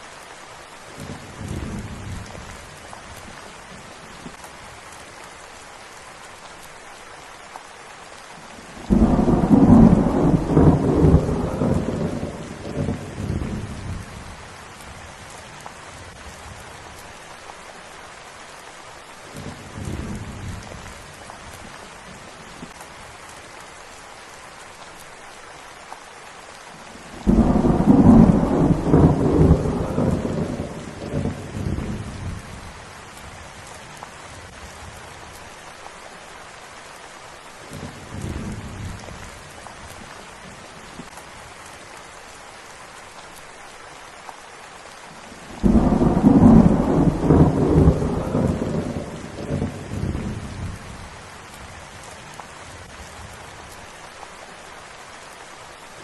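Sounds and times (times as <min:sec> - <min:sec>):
steady rain: 0:00.0 - 0:56.0
thunder rumbling: 0:08.8 - 0:14.4, 0:27.2 - 0:32.8, 0:45.4 - 0:51.1.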